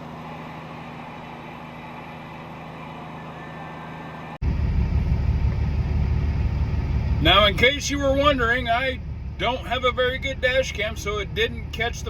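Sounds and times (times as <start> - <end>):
truck engine and road drone: 0.0 - 12.0
deep loud rumble: 4.4 - 11.7.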